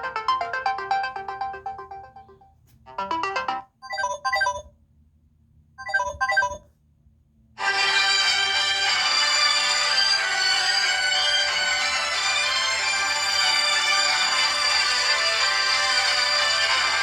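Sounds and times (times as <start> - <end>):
phone ringtone melody: 0.0 - 4.7, 5.8 - 6.6
short ringtone note bursts: 5.8 - 6.6.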